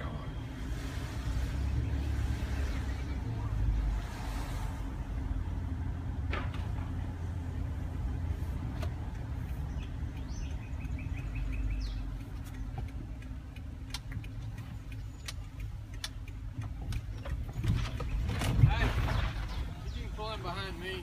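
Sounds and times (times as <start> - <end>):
car engine and road rumble: 0.0 - 21.0
small clicks: 8.8 - 18.4.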